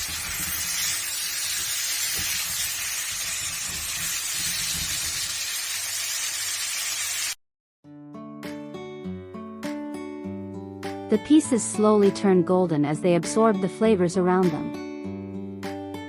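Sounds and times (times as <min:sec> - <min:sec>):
food sizzling in hot oil: 0:00.0 - 0:07.4.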